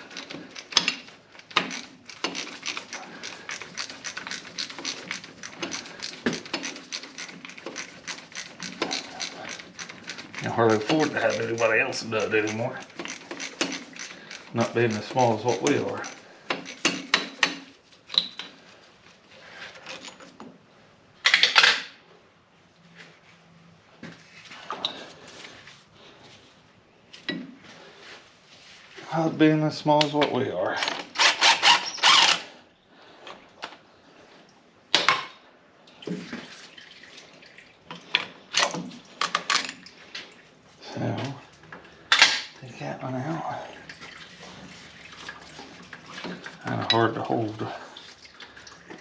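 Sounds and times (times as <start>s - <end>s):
metal tools clinking: 0.0s - 17.5s
metal parts clattering: 38.5s - 39.8s.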